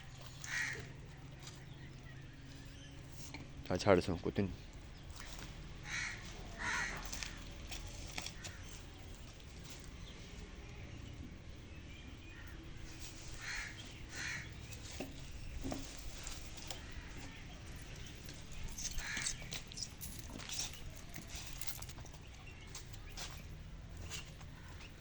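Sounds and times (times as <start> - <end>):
low outdoor rumble: 0.0 - 25.0
harsh bird calls: 0.2 - 3.3, 4.5 - 7.5, 12.0 - 25.0.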